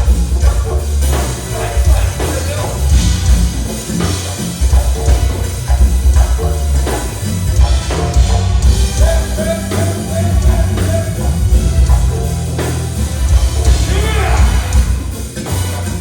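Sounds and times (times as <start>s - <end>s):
heavy bass and drum beat: 0.0s - 16.0s
person singing: 8.9s - 11.6s.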